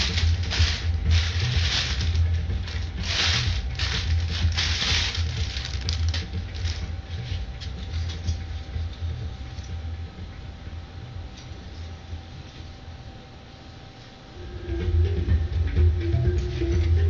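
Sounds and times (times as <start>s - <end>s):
rustling and crinkling: 0.0s - 9.7s
steady low hum: 0.0s - 17.0s.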